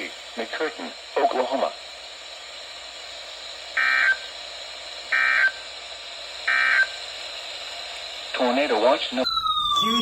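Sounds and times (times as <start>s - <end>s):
radio hiss: 0.0s - 10.0s
digital data buzzing bursts: 6.4s - 7.0s.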